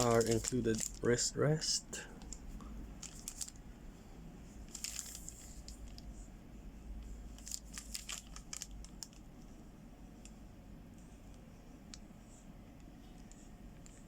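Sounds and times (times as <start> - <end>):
wrapping crinkling: 0.0 - 3.6, 4.6 - 6.1, 7.3 - 9.4.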